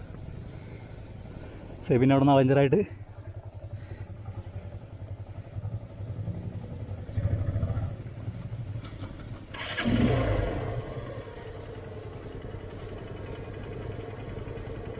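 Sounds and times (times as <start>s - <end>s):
motorcycle engine running: 0.0s - 14.9s.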